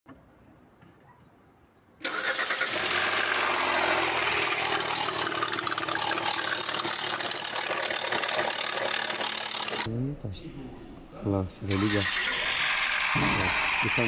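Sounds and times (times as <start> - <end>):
car engine starting and running: 2.0 - 9.9, 11.7 - 14.0
fast clicking clatter: 4.0 - 9.9.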